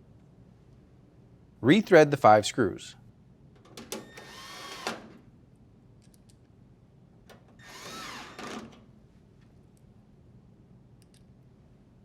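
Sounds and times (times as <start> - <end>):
drill driver driving screw: 3.9 - 5.2, 7.6 - 8.8.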